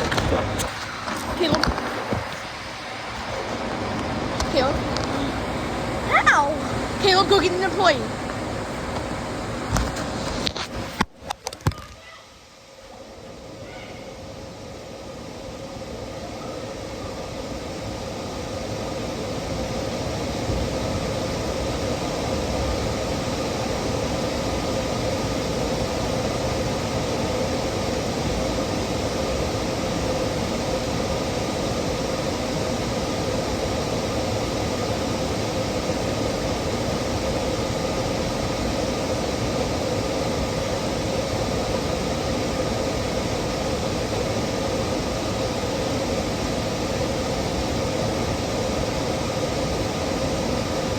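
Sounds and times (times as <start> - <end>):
mechanical hum and hiss: 0.0 - 50.9.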